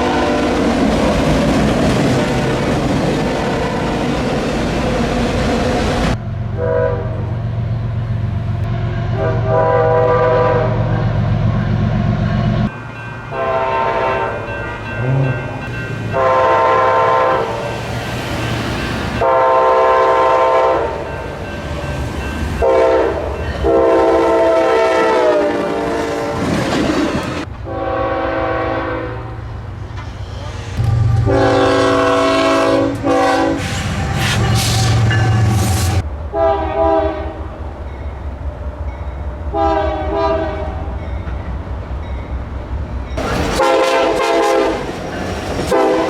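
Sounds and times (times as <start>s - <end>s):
locomotive air horn blasts: 0.0s - 0.6s, 6.5s - 7.4s, 9.0s - 11.2s, 13.3s - 14.5s, 16.2s - 17.6s, 19.2s - 21.1s, 22.6s - 26.5s, 27.6s - 29.5s, 30.8s - 37.4s, 39.5s - 40.9s, 43.5s - 44.9s, 45.7s - 46.0s
low train rumble: 0.0s - 46.0s.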